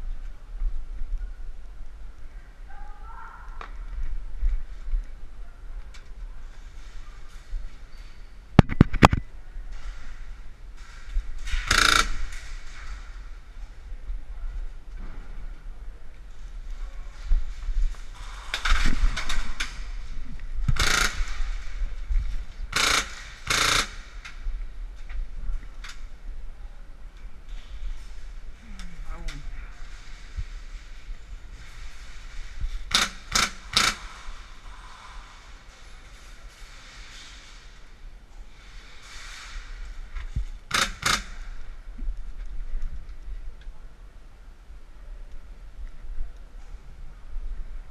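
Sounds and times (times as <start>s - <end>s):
airsoft gun full-auto bursts: 11.6s - 12.4s, 20.8s - 21.5s, 22.7s - 24.1s, 32.9s - 34.2s
airsoft gun shots: 22.7s - 24.0s.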